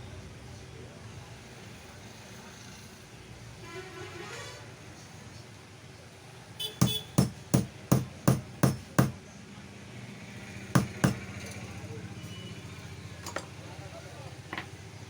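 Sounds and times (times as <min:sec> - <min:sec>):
hammer tapping: 0:06.8 - 0:09.2, 0:10.8 - 0:11.4.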